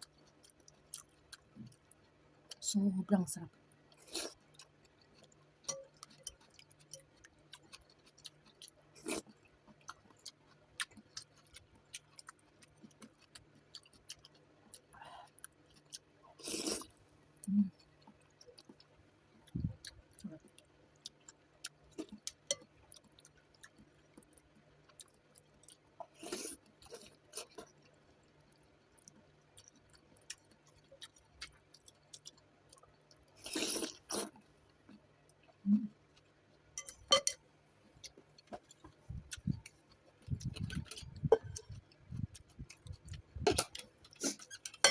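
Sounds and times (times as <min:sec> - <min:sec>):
chewing and lip smacks: 0:26.8 - 0:34.0, 0:38.0 - 0:44.9
slurping noodles: 0:33.4 - 0:34.3.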